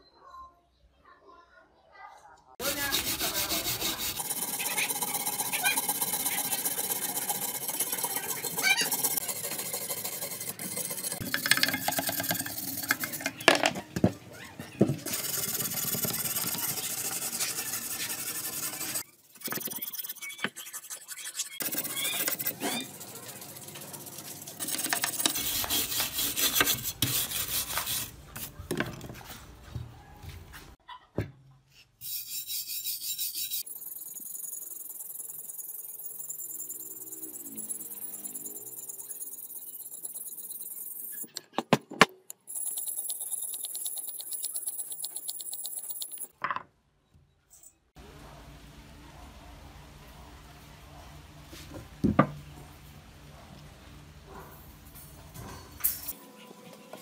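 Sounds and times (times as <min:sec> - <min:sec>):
sanding against hard surface: 0:02.6 - 0:13.4, 0:15.0 - 0:28.6, 0:32.0 - 0:41.3, 0:42.5 - 0:46.3.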